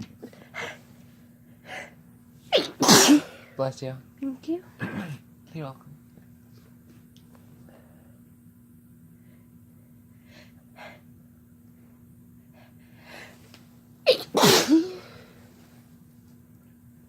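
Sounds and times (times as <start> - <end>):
person sneezing: 2.5 - 3.6, 14.1 - 15.4.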